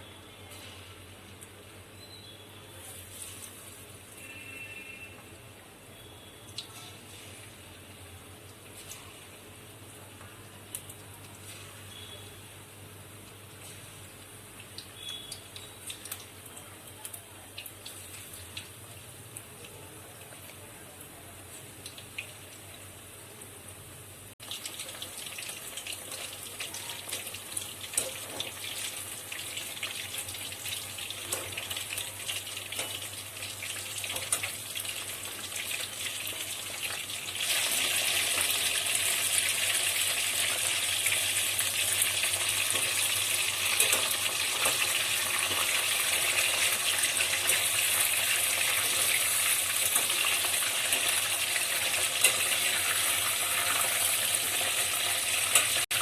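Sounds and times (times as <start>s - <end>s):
food sizzling in hot oil: 24.3s - 56.0s.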